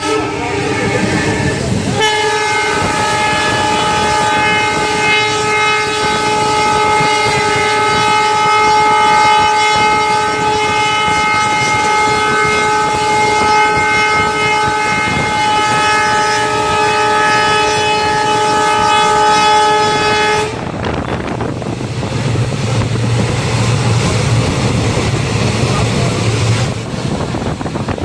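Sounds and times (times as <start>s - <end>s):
train horn blast: 0.0s - 21.5s
moving train rumble: 0.0s - 28.0s.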